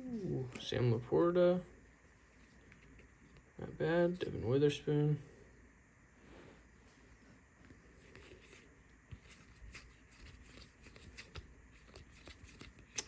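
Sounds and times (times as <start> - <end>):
trading cards flipping and rustling: 7.6 - 13.0.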